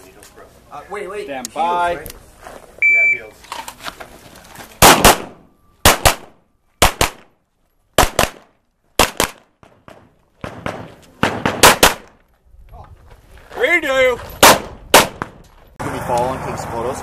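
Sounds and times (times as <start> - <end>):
pistol shots: 4.8 - 7.3, 8.0 - 12.2, 14.4 - 15.4.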